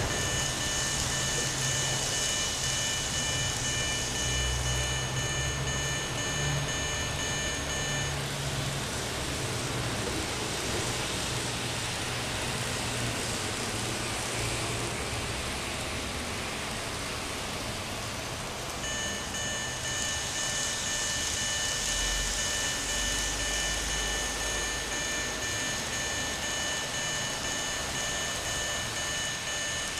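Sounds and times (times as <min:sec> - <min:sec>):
level crossing electronic alarm: 0:00.0 - 0:08.4, 0:18.8 - 0:29.9.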